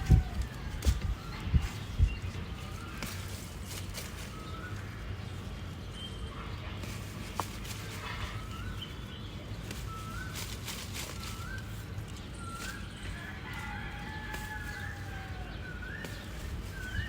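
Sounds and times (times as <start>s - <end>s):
distant rooster crowing: 0.0s - 2.0s, 12.6s - 17.0s
bird chirping: 0.0s - 17.0s
brief rustles: 9.6s - 13.0s.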